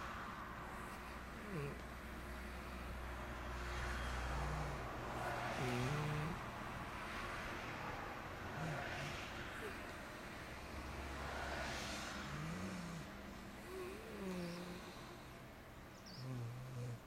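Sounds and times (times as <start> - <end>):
person snoring: 0.8 - 2.7, 3.8 - 6.4, 8.4 - 10.0, 11.2 - 15.3, 16.2 - 17.0.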